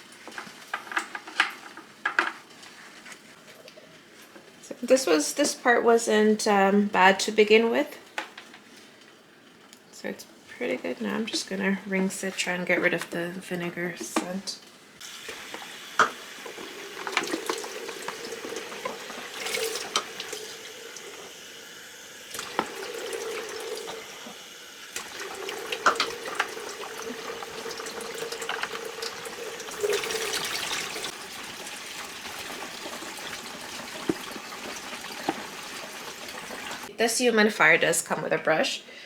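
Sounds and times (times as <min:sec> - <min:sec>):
water running from a tap: 0:15.0 - 0:36.9.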